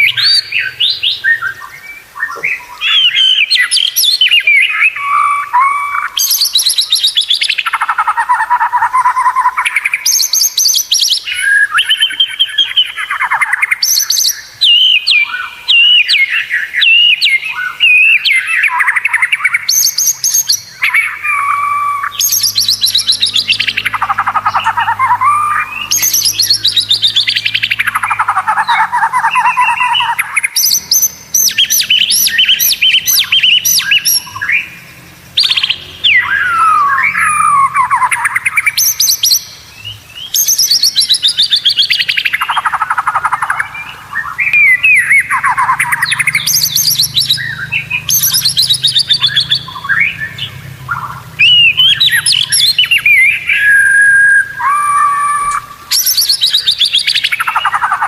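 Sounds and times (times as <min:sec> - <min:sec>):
songbird singing varied phrases: 0:00.0 - 0:58.0.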